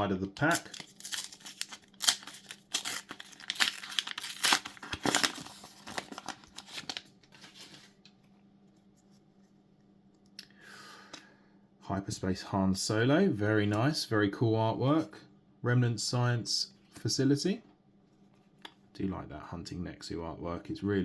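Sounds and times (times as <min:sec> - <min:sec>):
foil wrapper tearing and crinkling: 0:00.4 - 0:08.0.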